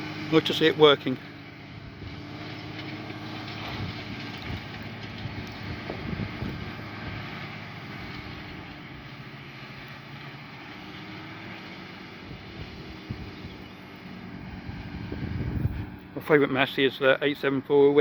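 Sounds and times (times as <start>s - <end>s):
tractor engine droning: 0.0s - 18.0s.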